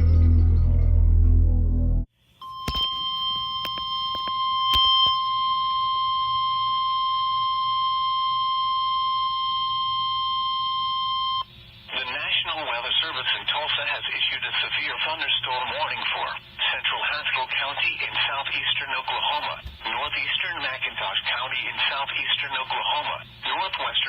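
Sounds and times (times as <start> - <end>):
music: 0.0 - 2.1
high-pitched warning alarm tone: 2.4 - 11.5.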